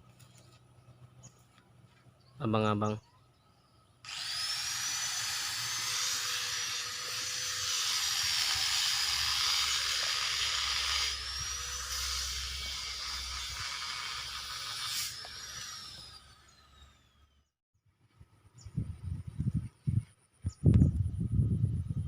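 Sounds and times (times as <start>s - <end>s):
angle grinder whining and grinding: 4.1s - 17.5s.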